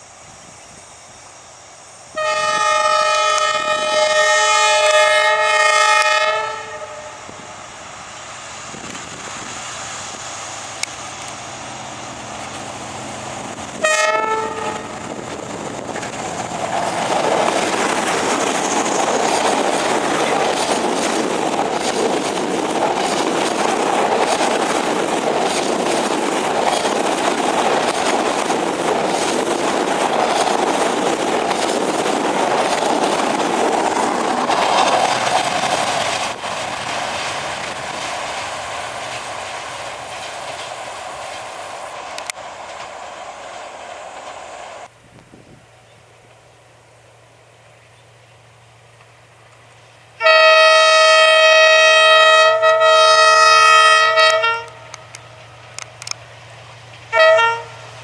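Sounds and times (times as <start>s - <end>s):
train horn blasts: 2.1s - 7.3s, 13.8s - 15.0s, 50.2s - 55.0s, 57.1s - 58.0s
train wheels clattering on rails: 8.6s - 44.9s, 54.2s - 58.0s.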